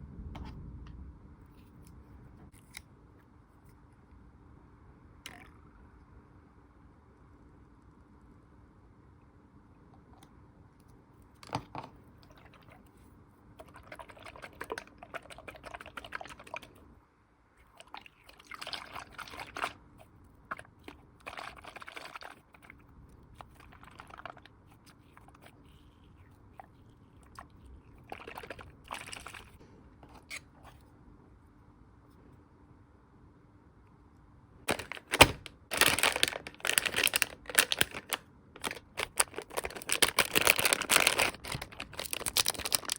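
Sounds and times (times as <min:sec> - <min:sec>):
squishy toy squeezed crunching: 0:34.7 - 0:42.9.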